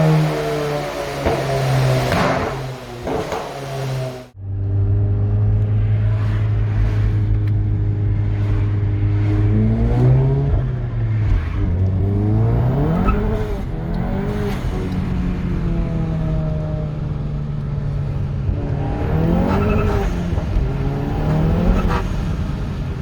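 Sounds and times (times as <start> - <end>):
car engine revving: 0.0 - 23.0
faint sharp exhaust pops: 1.2 - 3.9.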